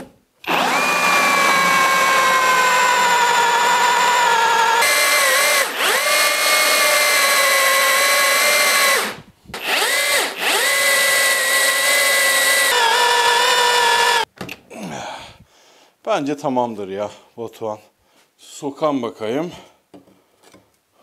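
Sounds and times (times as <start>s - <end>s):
electric drill boring into stone: 0.4s - 14.3s.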